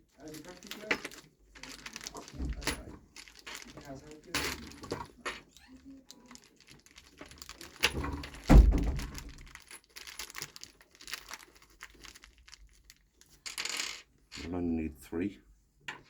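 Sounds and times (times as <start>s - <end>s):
small parts clicking: 0.1s - 14.0s
plastic bag crinkling: 0.2s - 13.4s
heavy thunk: 8.4s - 9.4s.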